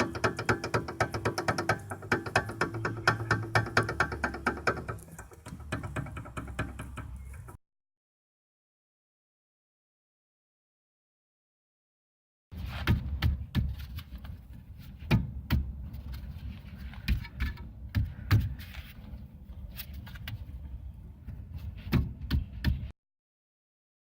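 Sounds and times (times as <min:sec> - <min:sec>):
brake calipers knocking: 0:00.0 - 0:07.6.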